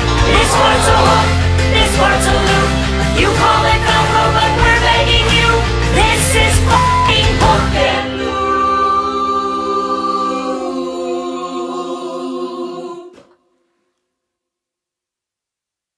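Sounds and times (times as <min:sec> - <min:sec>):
band and drums: 0:00.0 - 0:07.7
voices singing sustained chord: 0:00.0 - 0:13.3.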